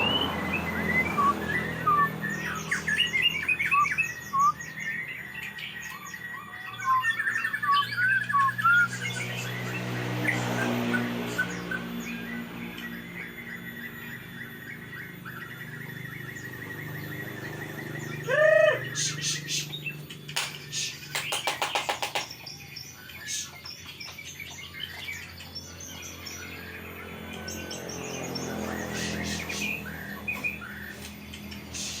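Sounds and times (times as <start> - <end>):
songbird chirping and twittering: 0.0 - 32.0
fast run of sharp clicks: 20.3 - 22.6.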